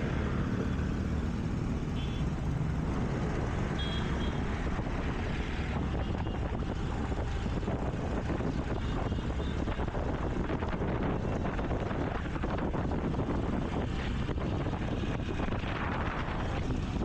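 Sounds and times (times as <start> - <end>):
traffic noise: 0.0 - 17.0.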